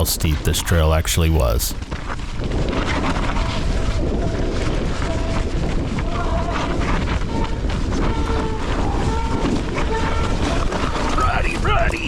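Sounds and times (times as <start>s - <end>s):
wind on microphone: 2.4s - 11.0s.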